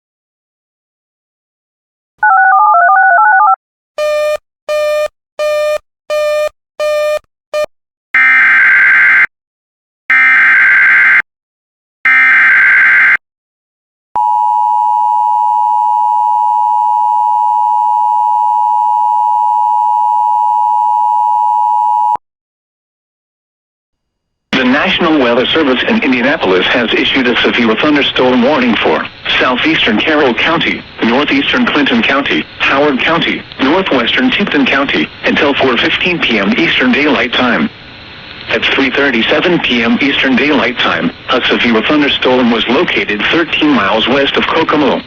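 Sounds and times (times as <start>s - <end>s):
short beeps: 2.2s - 7.7s
two-tone attention signal: 2.2s - 8.3s.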